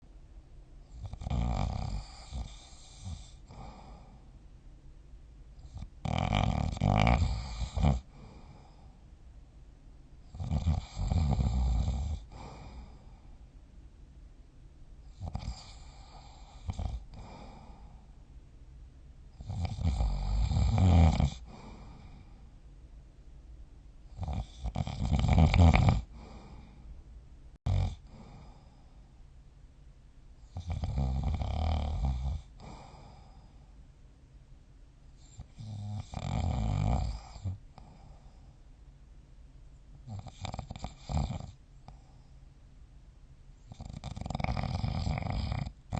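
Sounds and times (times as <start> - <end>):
quiet breathing: 0.0 - 29.4, 30.2 - 34.3, 34.9 - 42.8
person snoring: 1.0 - 4.2, 5.6 - 8.9, 10.3 - 13.2, 15.1 - 18.1, 19.4 - 22.4, 24.1 - 26.8, 27.7 - 28.9, 30.5 - 33.6, 35.2 - 38.4, 40.1 - 42.0, 43.7 - 45.9.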